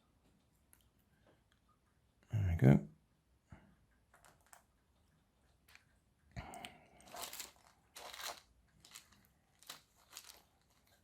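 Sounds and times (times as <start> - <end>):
rustling: 7.0 - 11.0.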